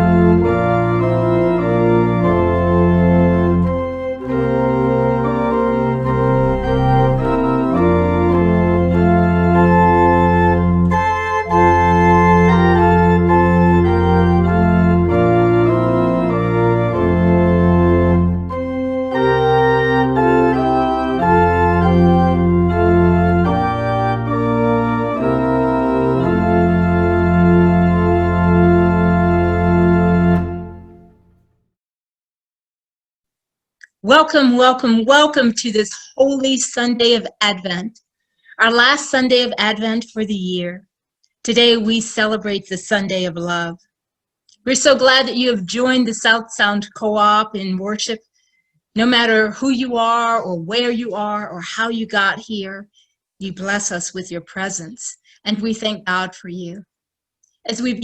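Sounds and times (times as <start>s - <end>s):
organ chords over bass line: 0.0s - 31.3s.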